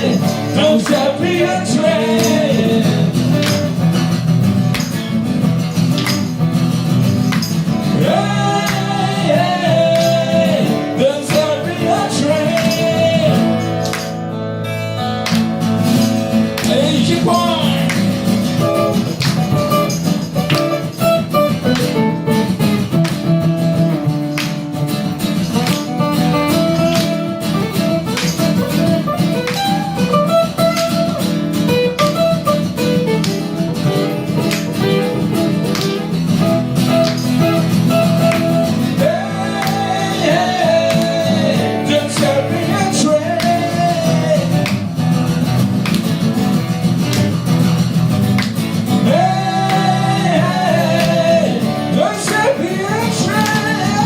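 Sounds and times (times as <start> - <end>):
live rock band playing: 0.0 - 54.0.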